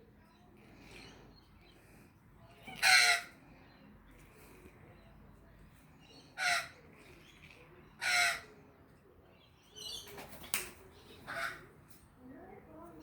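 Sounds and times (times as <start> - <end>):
magpie harsh calls: 2.6 - 3.3, 6.4 - 6.8, 8.0 - 8.5.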